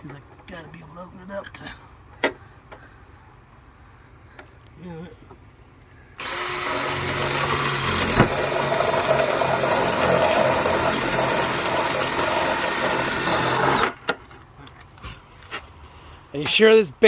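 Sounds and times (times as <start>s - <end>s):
power drill whining: 6.2s - 14.0s.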